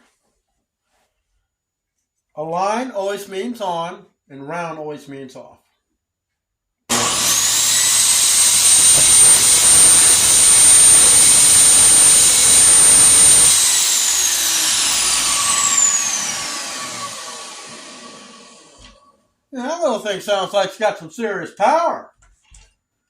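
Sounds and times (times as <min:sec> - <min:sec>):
table saw whining: 0:06.9 - 0:19.1.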